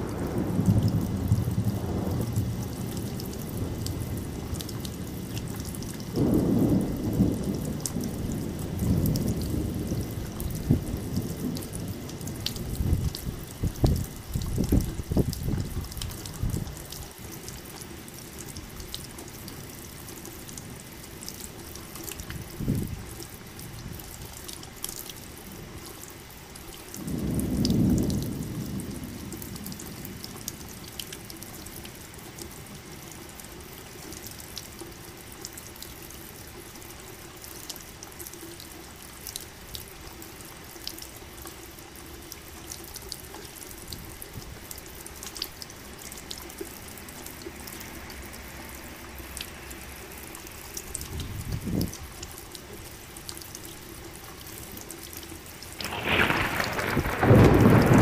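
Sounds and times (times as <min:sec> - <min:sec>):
crackling thunder cracks: 0:00.0 - 0:15.7, 0:27.0 - 0:30.3, 0:55.8 - 0:58.0
deep thunder rumble: 0:00.0 - 0:16.7, 0:27.0 - 0:30.3, 0:55.8 - 0:58.0
rain falling steadily: 0:00.0 - 0:58.0.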